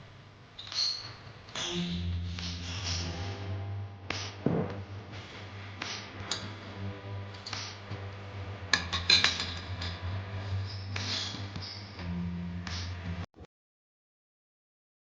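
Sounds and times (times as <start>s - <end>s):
low steady hum: 1.8s - 13.3s.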